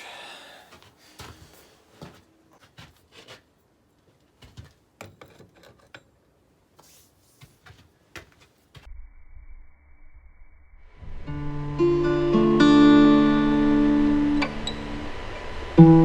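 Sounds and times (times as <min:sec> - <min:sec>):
background music: 0:11.3 - 0:14.8.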